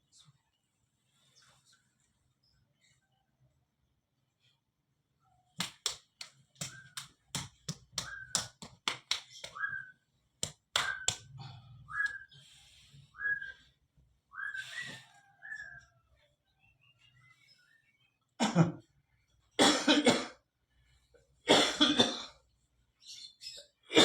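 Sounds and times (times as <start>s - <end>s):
palms slapping body: 5.6s - 9.8s, 10.4s - 11.3s
rising whistled chirps: 9.4s - 10.1s, 14.3s - 16.0s.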